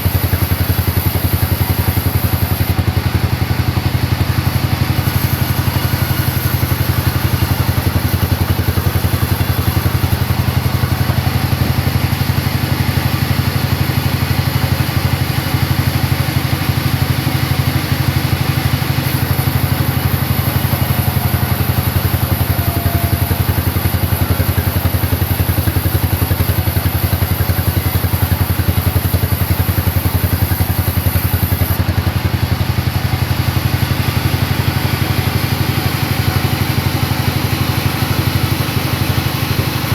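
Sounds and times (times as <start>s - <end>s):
engine running steadily: 0.0s - 39.9s.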